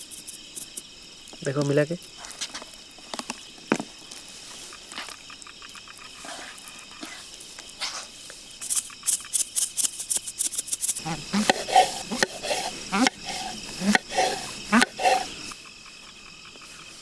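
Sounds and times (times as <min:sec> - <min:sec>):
insects chirring: 0:00.0 - 0:17.0.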